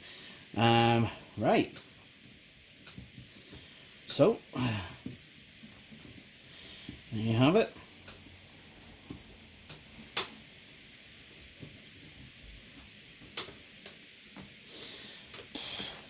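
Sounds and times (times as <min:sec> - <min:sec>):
clicks and knocks of chair parts: 0:09.0 - 0:10.5, 0:11.5 - 0:14.6.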